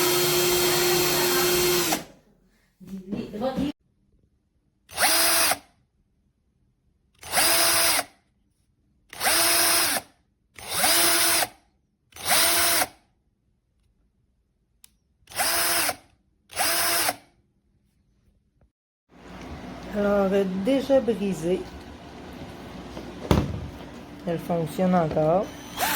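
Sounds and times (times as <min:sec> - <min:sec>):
cordless drill motor whining: 0:00.0 - 0:02.1, 0:10.6 - 0:11.5, 0:25.1 - 0:25.9.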